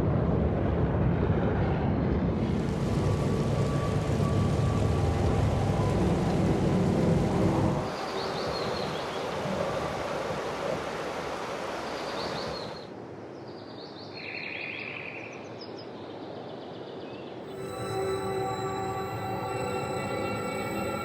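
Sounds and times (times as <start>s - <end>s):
low rumble: 0.0s - 7.9s.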